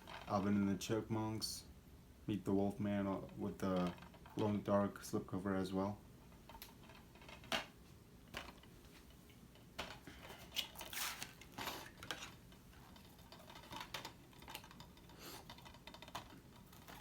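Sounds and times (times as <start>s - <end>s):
cardboard rustling and scraping: 9.9s - 14.1s.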